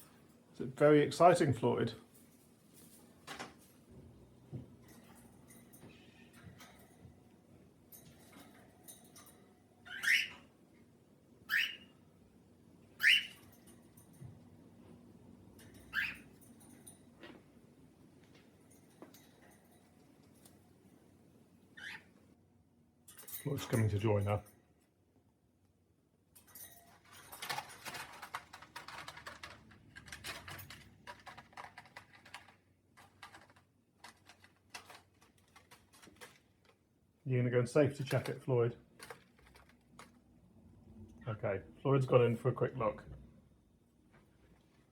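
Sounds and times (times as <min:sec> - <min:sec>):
cockatiel calls: 0:09.9 - 0:10.4, 0:11.5 - 0:11.9, 0:13.0 - 0:13.4, 0:15.9 - 0:16.3, 0:21.8 - 0:22.1
birds scratching on cardboard: 0:27.5 - 0:36.8, 0:39.0 - 0:40.2.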